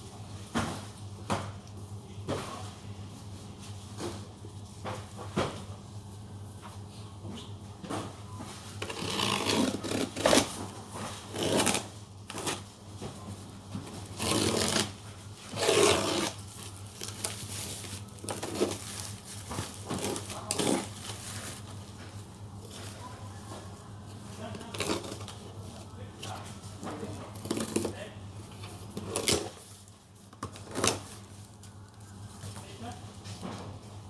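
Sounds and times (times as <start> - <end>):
packaging rustling and crinkling: 13.4 - 23.1.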